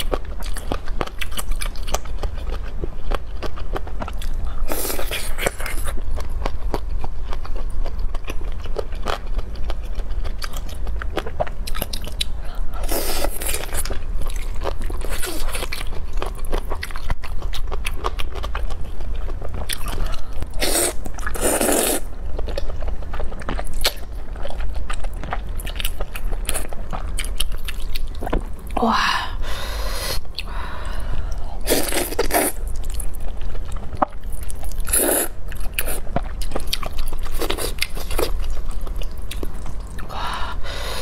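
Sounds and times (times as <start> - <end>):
crunchy chewing: 31.6 - 40.1.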